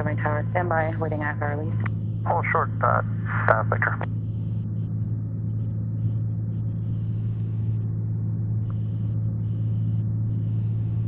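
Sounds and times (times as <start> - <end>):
propeller plane engine droning: 0.0 - 11.0.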